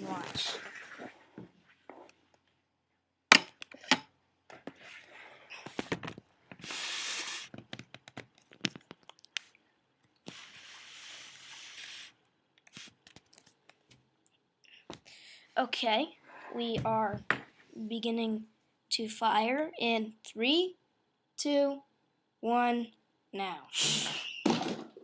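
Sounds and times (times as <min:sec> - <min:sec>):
hiss: 0:06.6 - 0:07.5, 0:10.5 - 0:12.1, 0:23.8 - 0:24.3.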